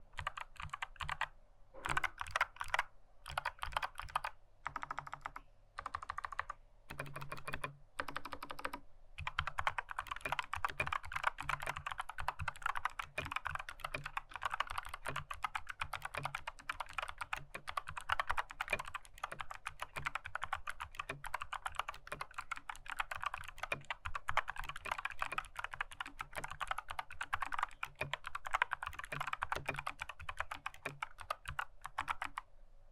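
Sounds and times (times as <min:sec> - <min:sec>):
clicky mechanical keyboard typing: 0:00.2 - 0:32.4.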